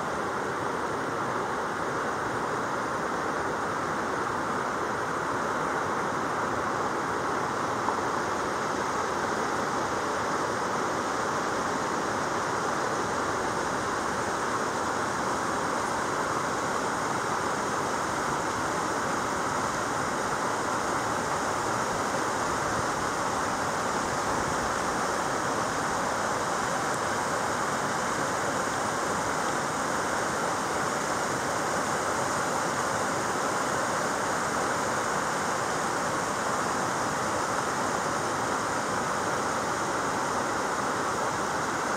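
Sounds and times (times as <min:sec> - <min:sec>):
water rushing: 0:00.0 - 0:41.9.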